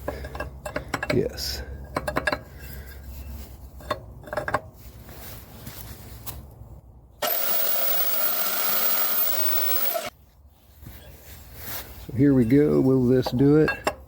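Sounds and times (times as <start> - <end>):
handheld grinder whining: 7.2 - 10.1.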